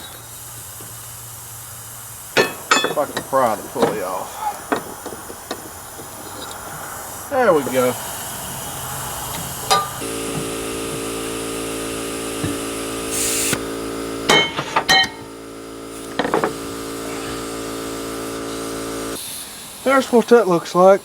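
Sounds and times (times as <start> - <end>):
machine hum: 0.0 - 19.2
metal parts clinking: 2.4 - 6.9, 9.7 - 10.0, 14.3 - 15.3.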